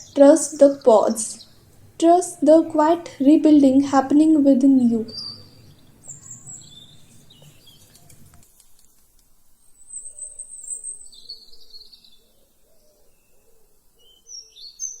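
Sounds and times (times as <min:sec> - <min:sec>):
birds chirping and trilling: 0:00.0 - 0:08.6, 0:09.6 - 0:15.0.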